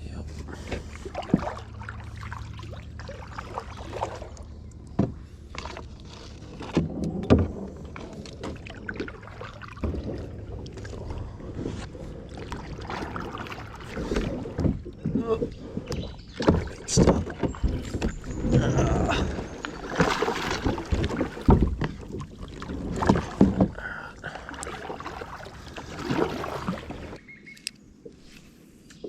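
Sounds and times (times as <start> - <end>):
small water sounds: 0.0 - 29.0
knocks and bumps on kayak: 4.9 - 6.0, 6.6 - 23.9.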